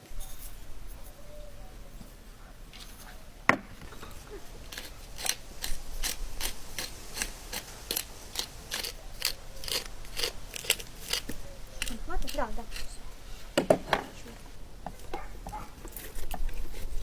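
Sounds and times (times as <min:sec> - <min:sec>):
crisp cutting strokes: 0:03.8 - 0:17.0.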